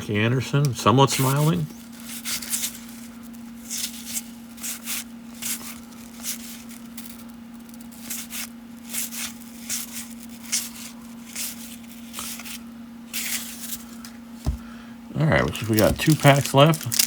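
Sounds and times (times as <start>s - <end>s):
low electrical hum: 0.0s - 17.0s
trading cards swishing: 7.8s - 14.6s, 15.5s - 17.0s.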